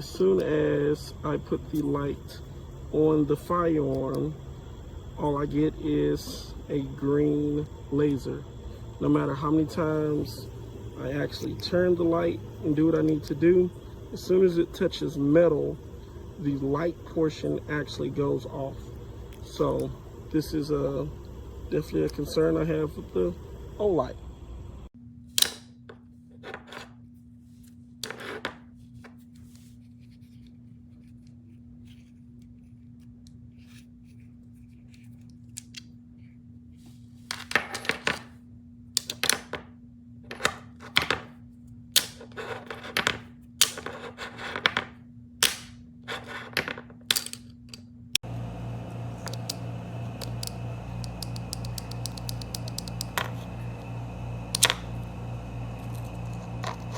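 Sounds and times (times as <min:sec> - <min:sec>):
low electrical hum: 0:00.0 - 0:56.9.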